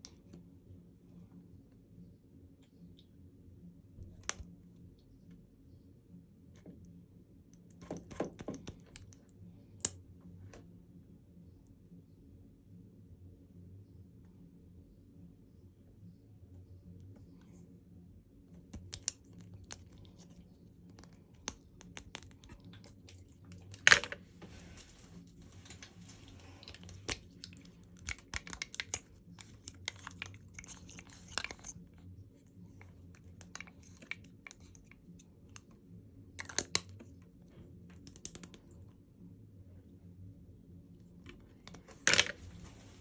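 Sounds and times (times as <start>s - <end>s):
low room hum: 0.0s - 43.0s
packaging clicks and taps: 26.6s - 31.6s.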